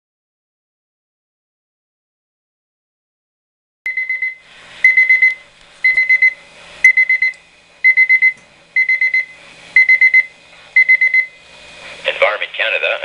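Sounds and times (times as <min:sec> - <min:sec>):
rapid high-pitched beeps: 0:03.9 - 0:11.4.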